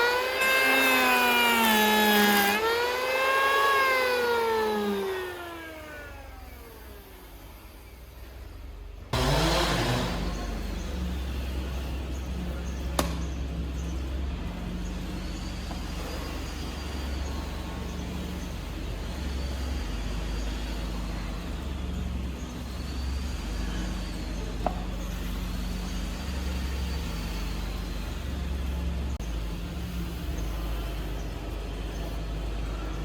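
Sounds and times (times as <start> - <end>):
machine humming: 0.0 - 33.0.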